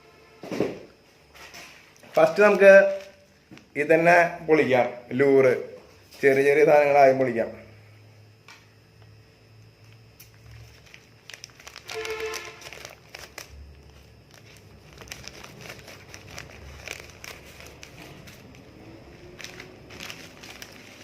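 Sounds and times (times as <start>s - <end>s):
packaging crinkling and tearing: 2.0s - 3.7s, 9.8s - 21.0s.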